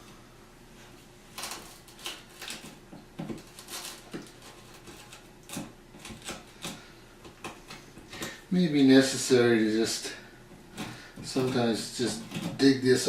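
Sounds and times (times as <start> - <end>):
hand tools tapping and scraping wood: 1.4 - 8.4, 10.5 - 13.0.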